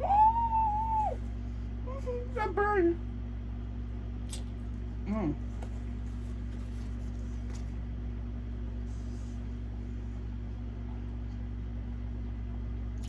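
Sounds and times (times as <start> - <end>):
steady low hum: 0.0 - 13.0
soft rustle: 5.6 - 7.8, 8.8 - 10.4.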